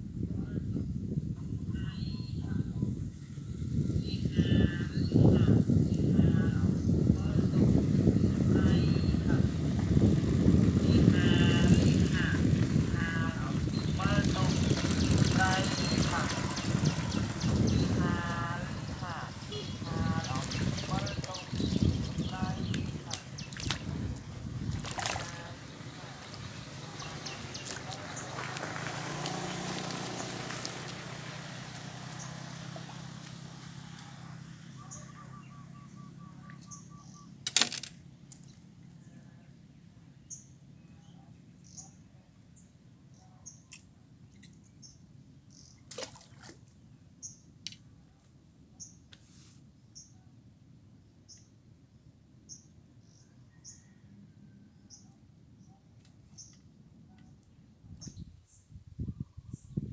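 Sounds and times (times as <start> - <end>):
rush of outdoor noise: 0.0 - 59.9
bird chirping rapidly: 13.0 - 24.0, 34.7 - 37.4
faint high bird chirps: 34.8 - 37.4.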